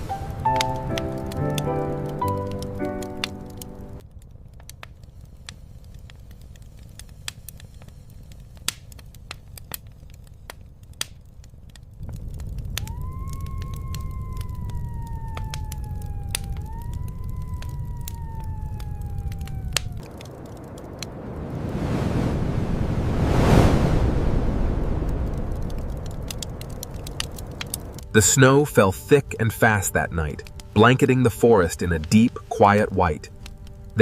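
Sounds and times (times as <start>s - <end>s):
low wind rumble: 0.0s - 9.3s, 11.6s - 34.0s
wood fire crackling and popping: 0.0s - 22.0s, 24.4s - 34.0s
howl-like tone sliding downward: 12.7s - 20.1s.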